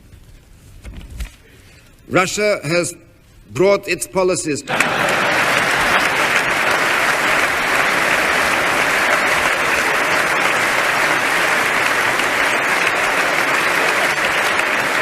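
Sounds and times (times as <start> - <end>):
large audience applauding: 4.7 - 15.0.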